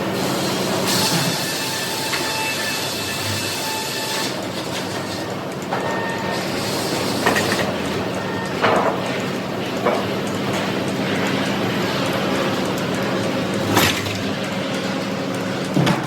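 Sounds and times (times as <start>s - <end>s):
motor hum: 6.7s - 16.0s.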